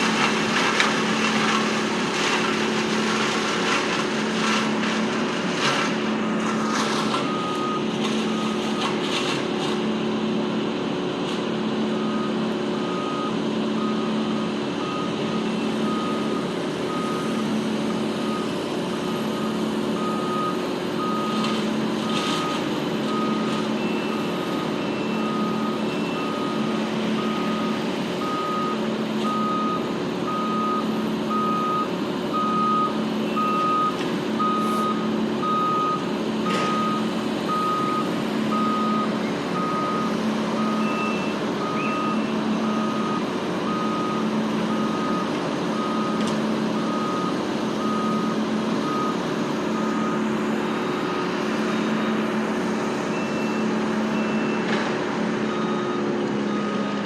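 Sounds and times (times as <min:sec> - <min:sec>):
diesel engine running: 0:00.0 - 0:57.0
reversing alarm beeping: 0:12.0 - 0:21.5, 0:22.1 - 0:52.4, 0:53.0 - 0:54.7.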